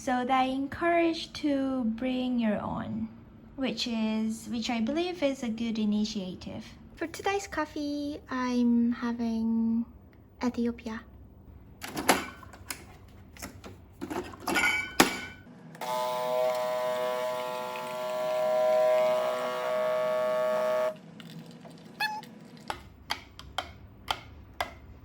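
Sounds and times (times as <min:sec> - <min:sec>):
small electric appliance whine: 0:15.7 - 0:22.4.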